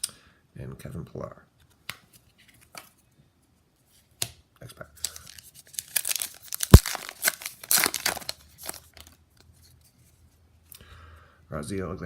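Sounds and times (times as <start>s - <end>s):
wrapper tearing and crinkling: 5.0s - 9.2s.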